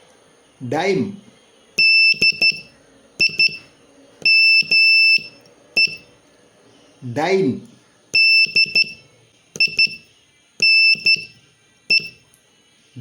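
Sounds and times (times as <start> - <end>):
morse code beeps: 1.8 - 6.1, 8.2 - 12.2.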